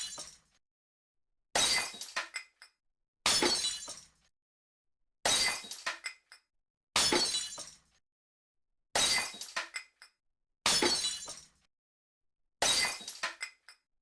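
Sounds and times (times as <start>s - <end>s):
glass smashing: 0.0s - 0.4s, 1.6s - 2.7s, 3.3s - 4.2s, 5.3s - 6.2s, 7.0s - 7.9s, 9.0s - 9.9s, 10.7s - 11.6s, 12.6s - 13.8s
tinkling glass shards: 0.0s - 0.4s, 12.7s - 13.7s.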